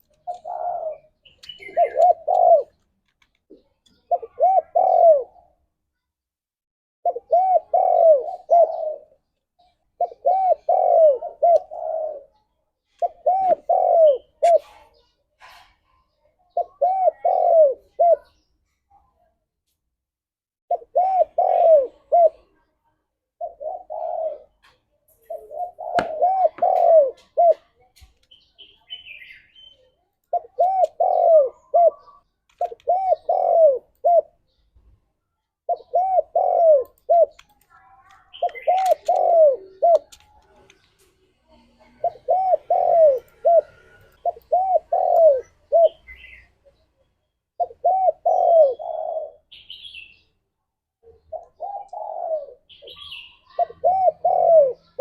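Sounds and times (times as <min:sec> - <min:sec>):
dove cooing: 0:00.0 - 0:02.8, 0:03.5 - 0:05.6, 0:07.0 - 0:15.1, 0:16.5 - 0:18.4, 0:20.7 - 0:22.6, 0:23.4 - 0:27.7, 0:30.3 - 0:34.5, 0:35.7 - 0:37.4, 0:38.3 - 0:46.8, 0:47.6 - 0:50.2, 0:51.0 - 0:55.0.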